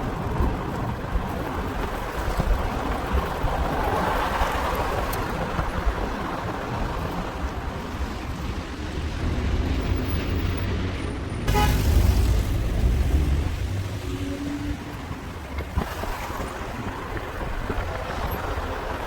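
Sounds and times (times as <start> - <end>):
cars passing: 0.0 - 19.0
vehicle horn tooting: 11.4 - 12.3.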